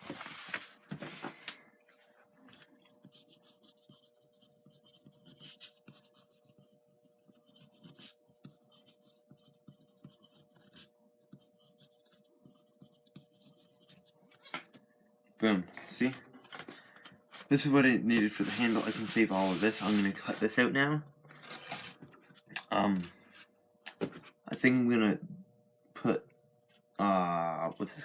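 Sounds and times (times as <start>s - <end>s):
faint steady hum: 0.0s - 28.0s
pencil scratching on foam board: 2.6s - 14.5s, 18.2s - 20.6s.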